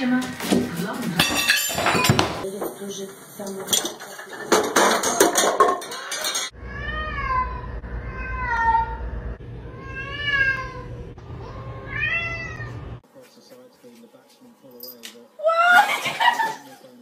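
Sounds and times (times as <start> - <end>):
things knocking and falling: 0.4 - 6.5
low hum: 6.6 - 12.0
cat meowing: 6.6 - 12.8.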